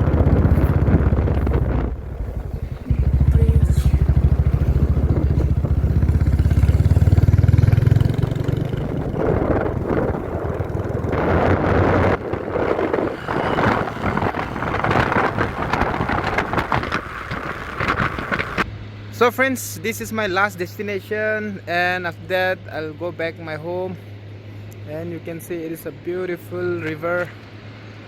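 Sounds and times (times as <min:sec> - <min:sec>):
wind buffeting microphone: 0:00.0 - 0:18.9
motorcycle engine running: 0:00.0 - 0:19.0.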